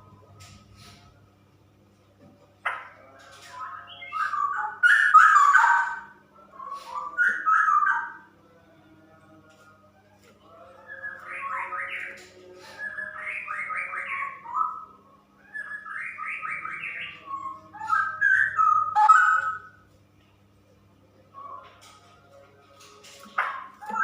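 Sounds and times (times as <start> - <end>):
bird singing bubbling phrases: 3.6 - 8.3, 12.8 - 19.8.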